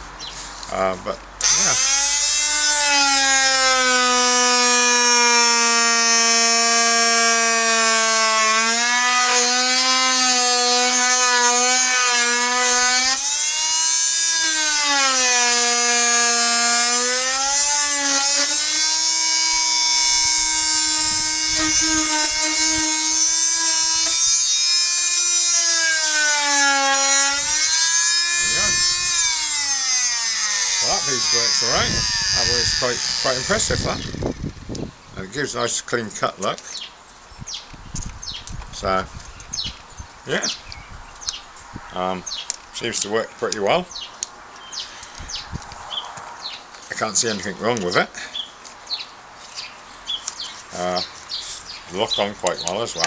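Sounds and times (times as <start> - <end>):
oscillating saw cutting wood: 1.4 - 34.9.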